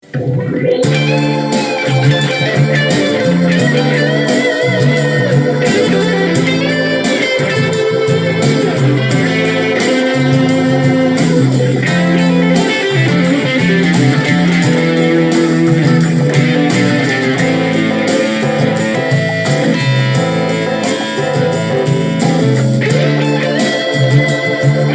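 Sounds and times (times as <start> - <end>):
bass line: 0.0 - 24.9
electric guitar melody: 0.0 - 24.9.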